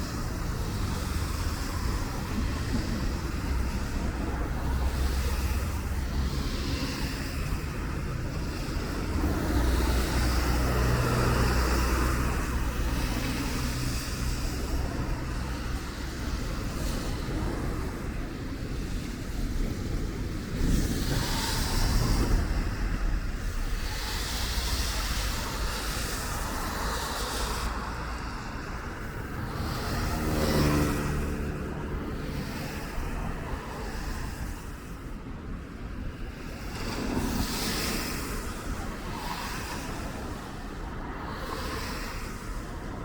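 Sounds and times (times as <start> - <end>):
street traffic: 0.0 - 43.0
vehicle engine hum passing: 0.0 - 43.0.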